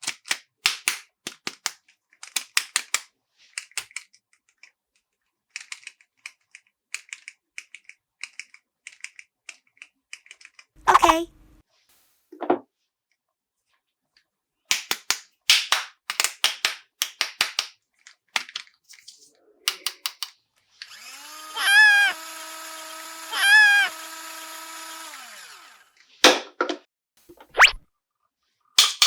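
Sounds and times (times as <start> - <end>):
plastic toy pieces clicking: 0.0 - 4.8, 5.5 - 10.7, 14.7 - 18.8, 19.7 - 21.0
toy electronic whir: 20.8 - 26.1
loud warbling chirps: 27.4 - 27.8.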